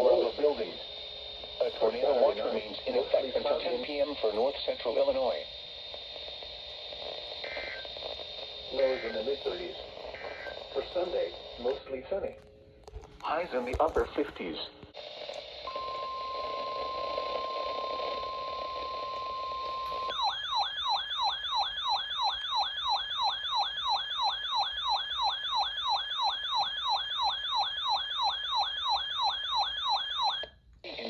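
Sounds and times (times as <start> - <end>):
radio hiss: 0.0 - 20.1.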